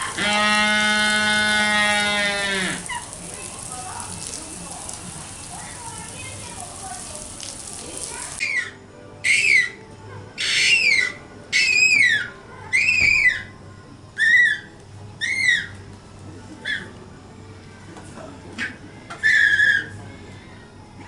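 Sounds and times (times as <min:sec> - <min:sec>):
dolphin whistling calls: 0:08.4 - 0:09.8, 0:10.4 - 0:13.5, 0:14.2 - 0:15.8, 0:19.2 - 0:20.0.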